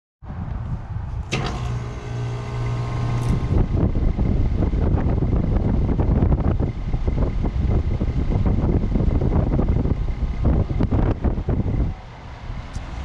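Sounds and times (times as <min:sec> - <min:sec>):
electrical hum: 0:01.1 - 0:13.0
air conditioner clunk: 0:01.3 - 0:03.8
unsteady rushing of air: 0:03.4 - 0:13.0.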